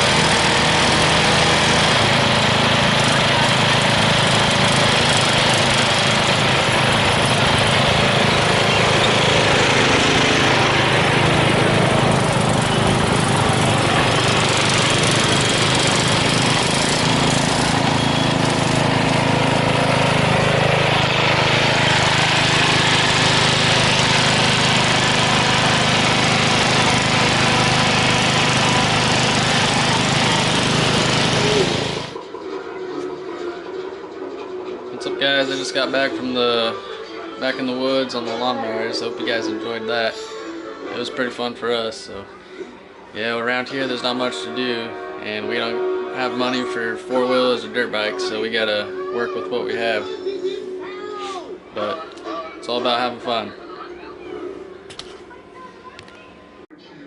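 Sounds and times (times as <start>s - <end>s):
riding lawn mower engine running: 0.0s - 32.3s.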